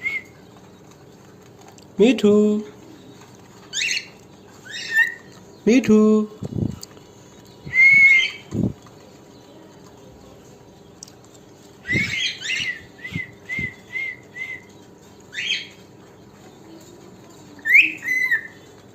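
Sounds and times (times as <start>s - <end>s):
cockatiel chirping: 3.7s - 5.3s, 7.7s - 8.5s, 11.8s - 14.7s, 15.3s - 15.8s, 17.6s - 18.6s.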